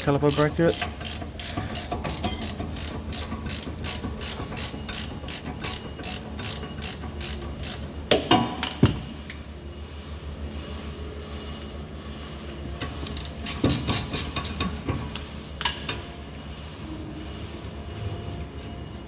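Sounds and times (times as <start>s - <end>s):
ratchet wrench clicking: 0.3s - 7.9s.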